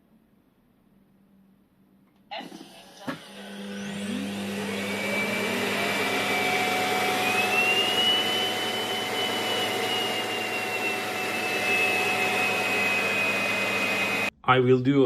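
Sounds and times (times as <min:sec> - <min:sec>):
suction motor whine: 0:02.4 - 0:14.3.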